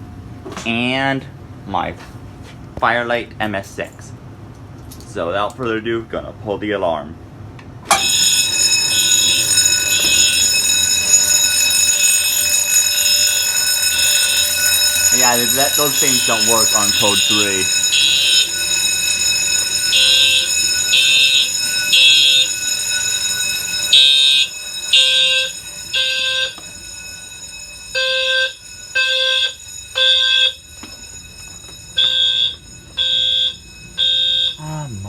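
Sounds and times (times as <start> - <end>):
steady background tone: 7.9 - 34.8
fire alarm horn blasts: 7.9 - 34.9.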